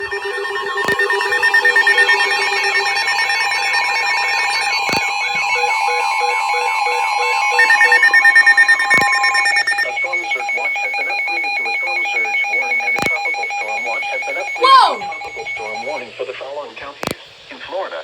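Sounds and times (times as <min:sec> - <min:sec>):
warbling alarm: 0:00.0 - 0:16.0
synthesized voice speaking: 0:14.6 - 0:15.1.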